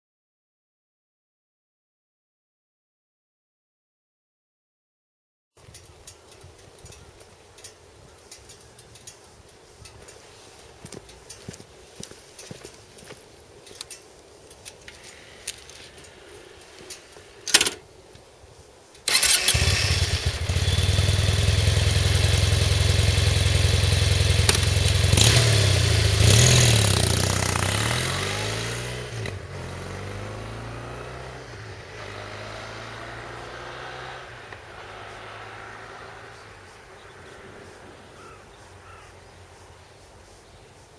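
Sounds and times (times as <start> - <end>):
light clicks: 5.6 - 18.3
motorcycle engine running: 19.1 - 37.1.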